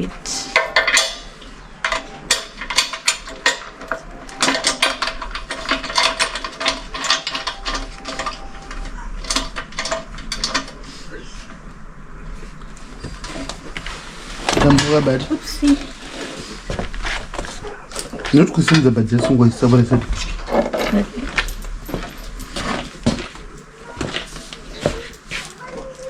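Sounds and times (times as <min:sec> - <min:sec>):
metallic clicking and rattling: 0:00.5 - 0:08.5, 0:09.2 - 0:10.8.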